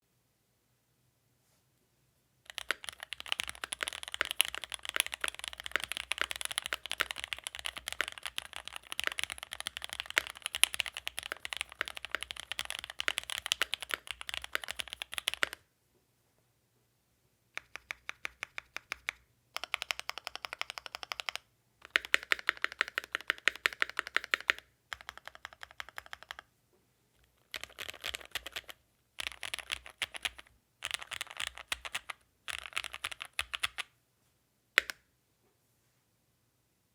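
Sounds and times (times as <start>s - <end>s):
mechanical keyboard typing: 2.5s - 15.6s, 17.6s - 26.5s, 27.2s - 33.9s, 34.8s - 35.0s.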